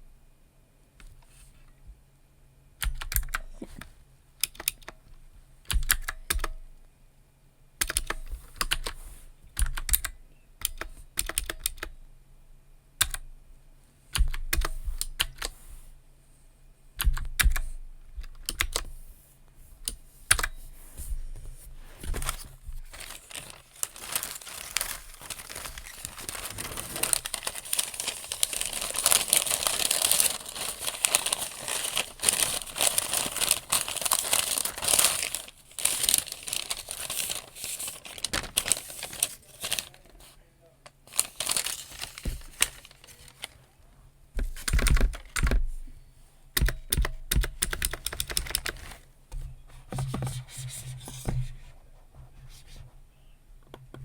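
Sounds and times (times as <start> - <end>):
computer keyboard typing: 2.8 - 3.5, 4.4 - 5.0, 7.8 - 9.0, 9.6 - 11.9, 17.0 - 18.9, 44.4 - 45.6, 46.6 - 48.8
paper crinkling: 20.3 - 43.7.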